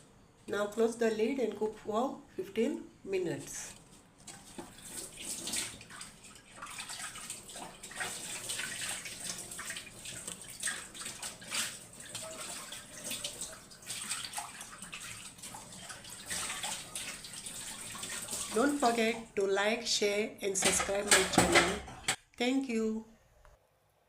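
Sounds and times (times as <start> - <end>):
water boiling in a pot: 4.2 - 19.4.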